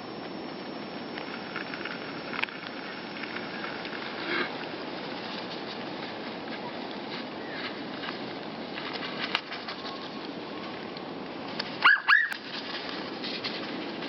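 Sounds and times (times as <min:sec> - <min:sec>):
steady background hiss: 0:00.0 - 0:14.0
bird wings fluttering: 0:02.8 - 0:10.8, 0:11.5 - 0:14.0.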